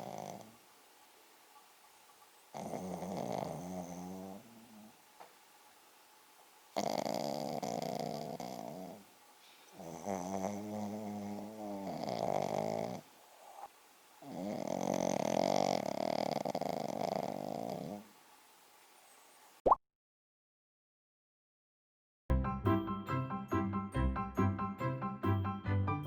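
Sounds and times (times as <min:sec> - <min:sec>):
dog snoring: 0:00.0 - 0:00.6, 0:02.5 - 0:05.0, 0:06.8 - 0:09.1, 0:09.7 - 0:18.1.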